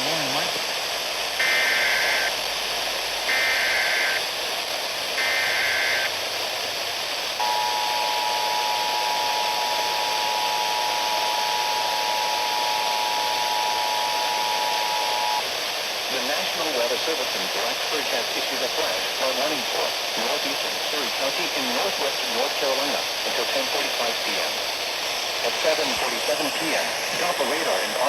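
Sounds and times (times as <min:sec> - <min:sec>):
radio hiss: 0:00.0 - 0:28.0
data bursts: 0:03.3 - 0:04.2, 0:05.2 - 0:06.1.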